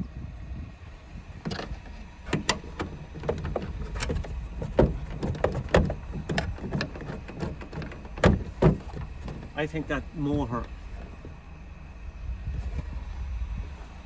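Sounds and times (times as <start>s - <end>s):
clicks and knocks: 1.4s - 10.0s.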